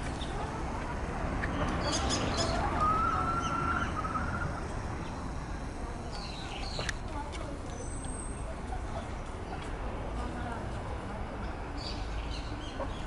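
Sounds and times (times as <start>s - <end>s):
low background noise: 0.0s - 13.0s
rooster crowing: 2.6s - 4.6s.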